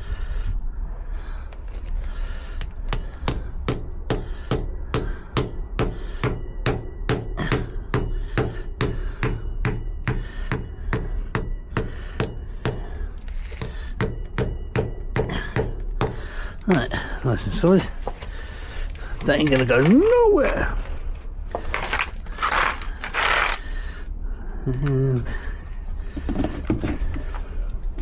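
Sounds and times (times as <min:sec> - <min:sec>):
hammer striking metal: 0:01.7 - 0:17.6.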